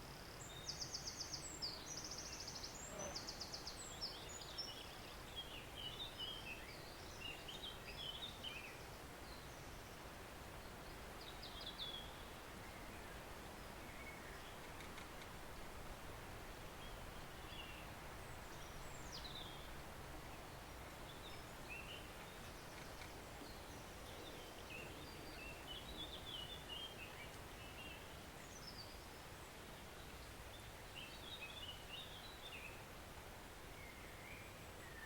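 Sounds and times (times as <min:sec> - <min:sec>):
songbirds chirping and whistling: 0:00.3 - 0:10.0, 0:20.4 - 0:32.8, 0:33.7 - 0:35.0.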